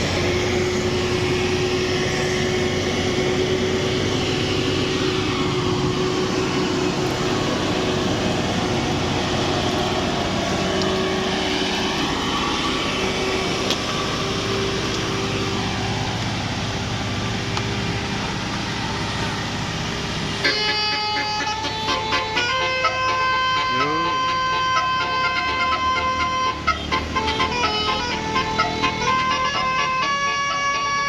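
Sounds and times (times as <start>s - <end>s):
bus engine under load: 0.0s - 31.0s
multi-tone bus horn melody: 20.2s - 31.0s.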